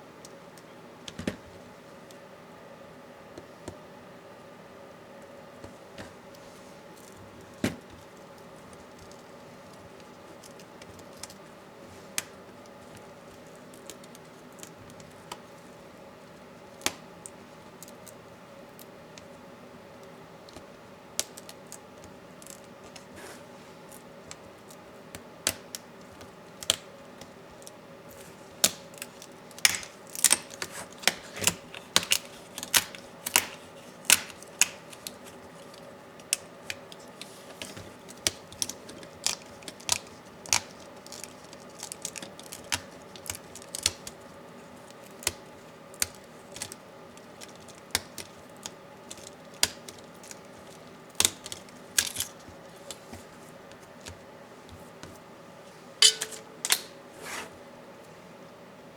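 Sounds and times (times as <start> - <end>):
clicks of hand tools and parts: 56.0 - 57.0.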